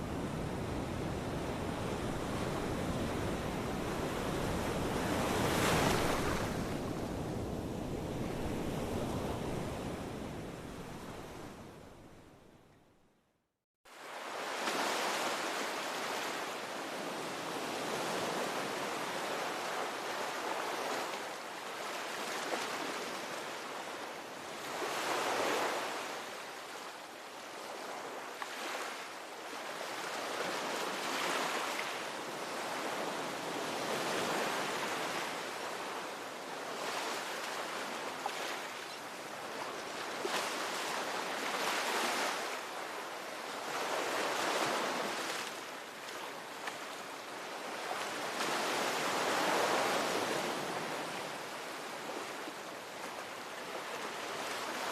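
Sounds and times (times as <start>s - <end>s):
ocean waves breaking: 0.0s - 11.6s.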